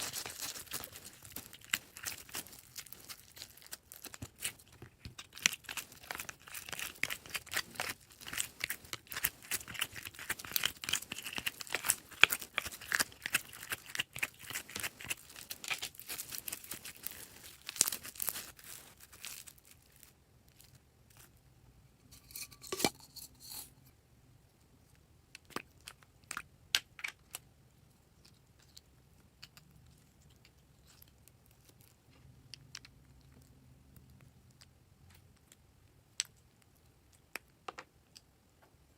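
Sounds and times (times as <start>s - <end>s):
slime crackling and popping: 0.0s - 21.3s.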